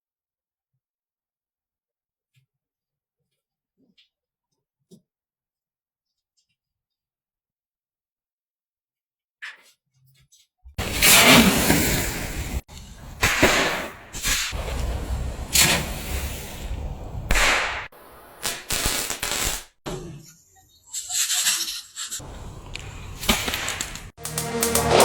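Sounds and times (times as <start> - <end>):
fireworks bangs: 10.8 - 19.8, 22.2 - 25.0
fireworks hissing: 10.8 - 19.8, 21.2 - 25.0.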